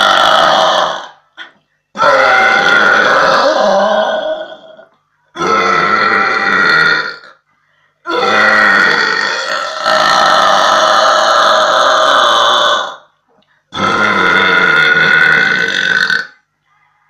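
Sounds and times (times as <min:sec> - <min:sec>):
woman burping: 0:13.7 - 0:16.4.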